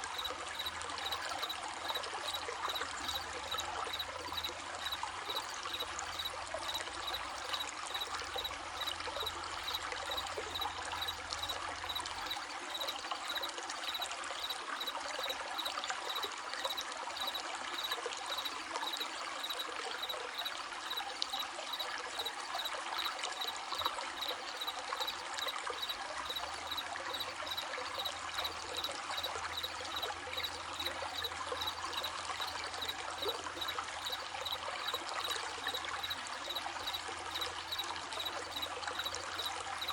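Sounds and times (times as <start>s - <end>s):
crickets chirping: 0.0s - 39.9s
stream babbling: 0.0s - 39.9s.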